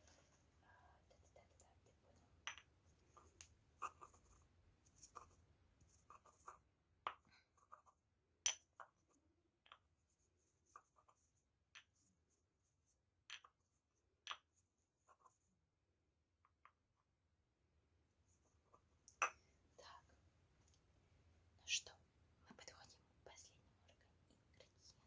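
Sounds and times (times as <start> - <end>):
small objects clicking and tapping: 2.4 - 3.6, 6.4 - 9.9, 13.2 - 13.6, 14.2 - 14.5.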